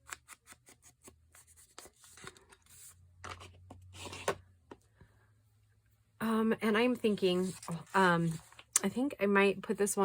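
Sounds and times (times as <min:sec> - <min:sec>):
paper rustling: 0:07.0 - 0:08.7.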